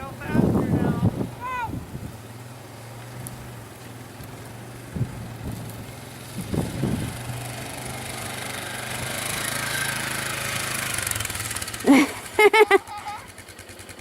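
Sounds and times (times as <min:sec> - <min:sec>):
small engine running: 0:02.0 - 0:14.0.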